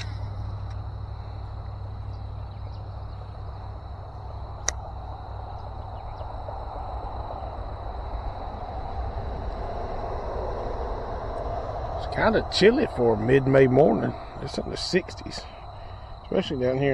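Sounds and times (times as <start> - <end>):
highway traffic rumble: 0.0 - 16.9
sharp click: 4.6 - 4.8.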